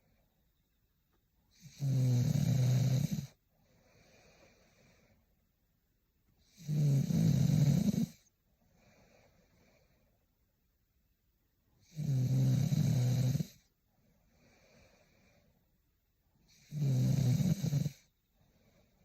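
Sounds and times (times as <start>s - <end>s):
woman snoring: 1.6s - 3.4s, 6.4s - 8.3s, 11.8s - 13.7s, 16.5s - 18.1s
soft breath: 3.3s - 5.6s, 8.1s - 10.4s, 13.6s - 15.8s, 18.0s - 19.0s.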